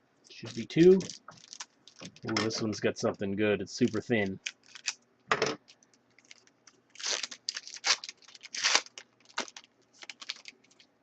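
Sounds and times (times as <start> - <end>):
wrapper tearing and crinkling: 0.4 - 2.6, 3.8 - 5.0, 5.7 - 10.9.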